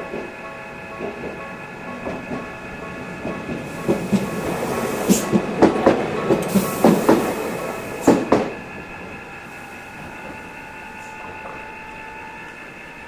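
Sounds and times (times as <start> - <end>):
tram wheels clacking over rail joints: 0.0 - 9.3
crossing warning bell ringing: 0.0 - 13.0.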